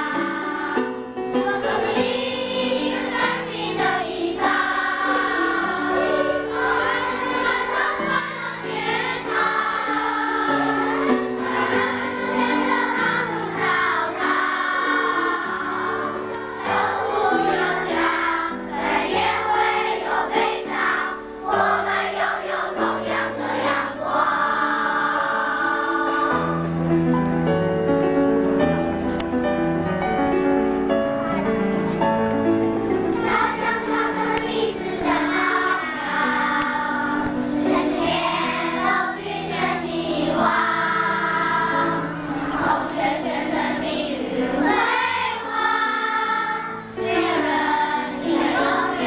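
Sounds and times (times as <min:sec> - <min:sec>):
choir singing: 0:00.0 - 0:26.7, 0:33.0 - 0:49.0
musical accompaniment: 0:00.0 - 0:49.0.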